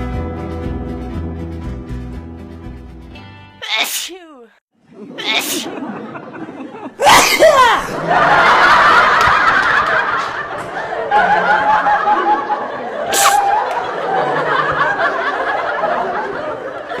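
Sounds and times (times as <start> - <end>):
people laughing and chattering: 4.8 - 7.1, 7.7 - 17.0
sharp hiss-like burst: 13.2 - 13.5.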